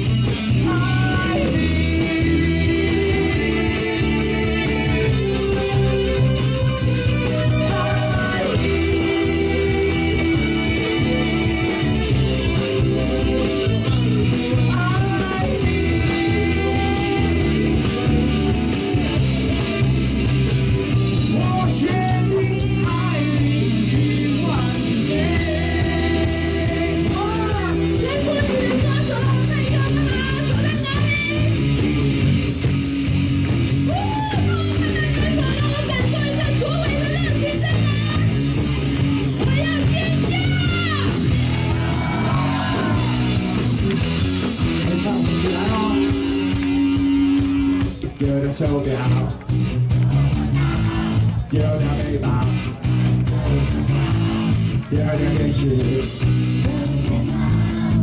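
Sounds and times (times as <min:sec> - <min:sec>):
electric guitar: 0:00.0 - 0:58.0
live rock band playing: 0:00.0 - 0:58.0
person singing: 0:00.5 - 0:06.0, 0:07.0 - 0:19.7, 0:21.1 - 0:31.6, 0:44.7 - 0:47.3, 0:54.8 - 0:58.0
drum beat: 0:22.8 - 0:58.0.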